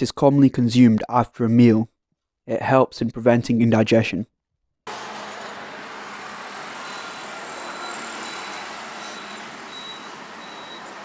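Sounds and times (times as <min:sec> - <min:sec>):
street traffic noise: 0:04.9 - 0:11.0
faint whining tones: 0:05.2 - 0:11.0.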